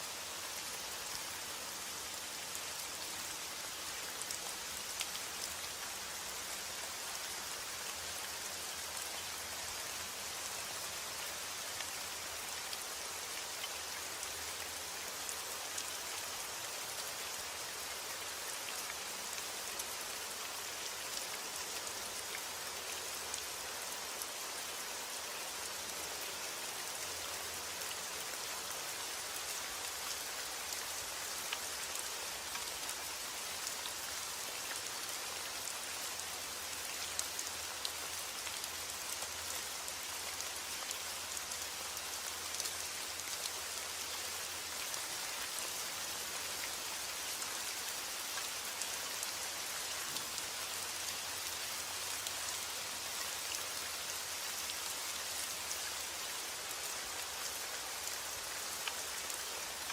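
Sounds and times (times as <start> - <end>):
steady rain hissing: 0.0 - 59.9
raindrops ticking on a surface: 4.1 - 10.4, 35.6 - 59.9.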